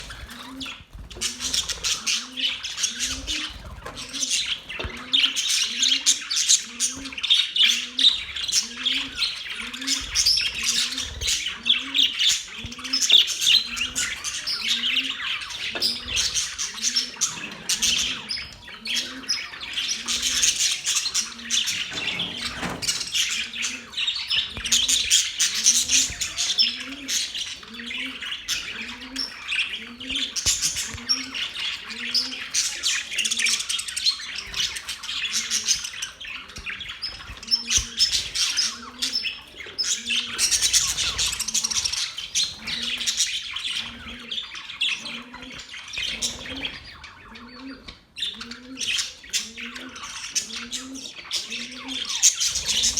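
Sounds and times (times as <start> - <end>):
budgerigars chirping: 0.0 - 52.9.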